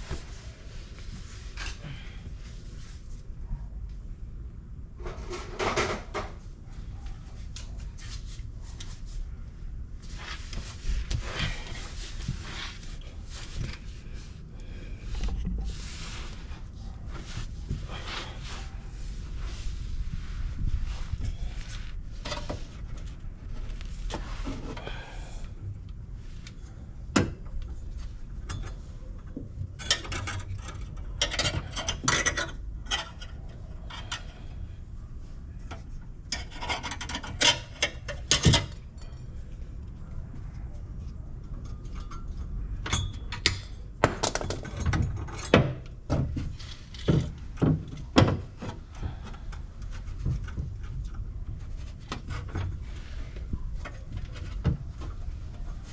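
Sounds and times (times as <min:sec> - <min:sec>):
low steady rumble: 0:00.0 - 0:36.4
metal tools clinking and scraping: 0:36.3 - 0:39.7.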